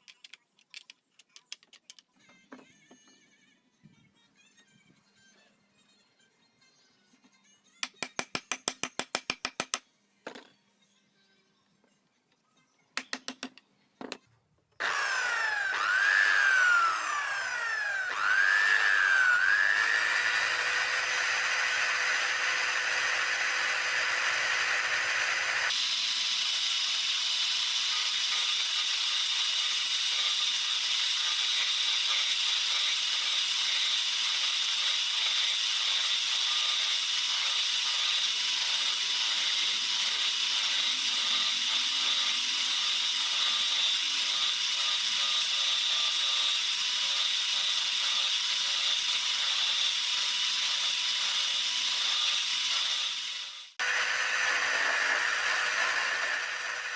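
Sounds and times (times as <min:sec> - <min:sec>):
steady motor whine: 0:14.8 - 0:25.7
electric drill motor running: 0:14.8 - 0:56.9.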